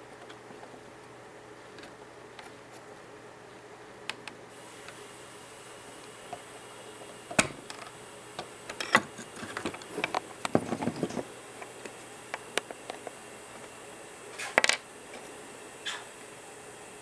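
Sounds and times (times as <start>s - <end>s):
clatter of parts: 8.8s - 11.7s.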